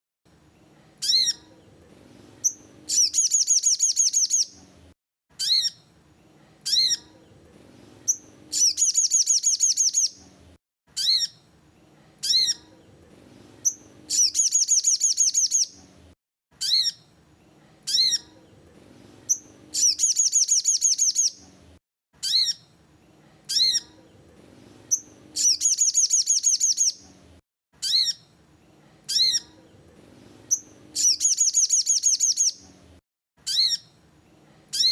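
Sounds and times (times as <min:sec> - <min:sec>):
faint low hum: 0:00.3 - 0:05.0, 0:05.8 - 0:10.6, 0:11.4 - 0:16.2, 0:17.0 - 0:27.4, 0:28.2 - 0:33.0, 0:33.8 - 0:34.9
bird calling with trill: 0:01.0 - 0:01.5, 0:02.4 - 0:04.6, 0:05.4 - 0:05.8, 0:08.1 - 0:10.2, 0:10.9 - 0:11.4, 0:13.6 - 0:15.8, 0:16.6 - 0:17.0, 0:19.3 - 0:21.4, 0:22.2 - 0:22.7, 0:24.9 - 0:27.0, 0:27.8 - 0:28.3, 0:29.1 - 0:29.6, 0:30.5 - 0:32.6, 0:33.4 - 0:33.9.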